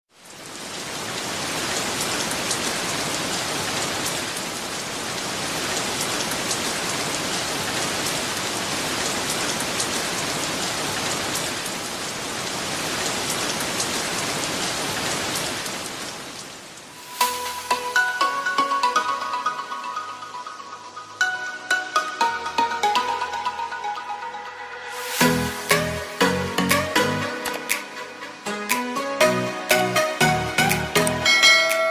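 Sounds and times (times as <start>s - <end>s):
raindrops ticking on surface: 0.1s - 17.7s
heavy rain hiss: 0.2s - 22.4s, 24.8s - 31.1s.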